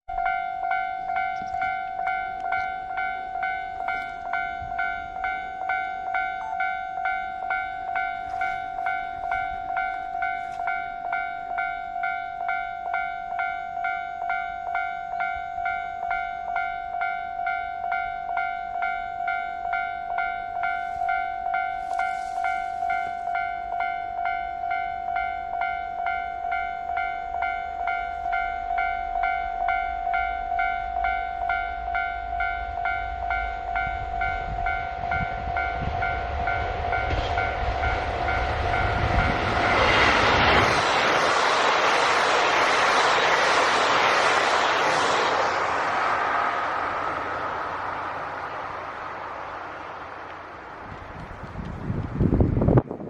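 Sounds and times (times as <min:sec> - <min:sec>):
level crossing warning bell: 0:00.1 - 0:41.9.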